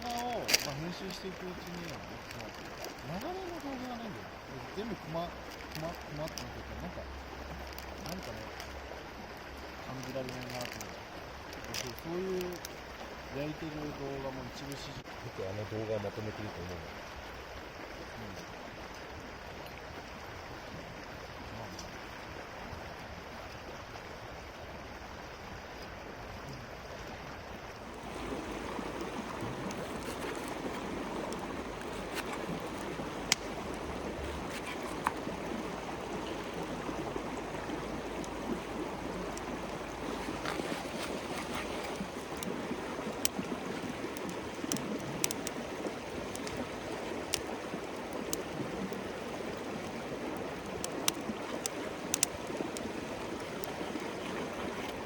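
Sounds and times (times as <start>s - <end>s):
campfire crackles and pops: 0.0s - 15.2s, 16.4s - 25.0s, 26.3s - 55.0s
fire rushing hiss: 27.8s - 55.0s.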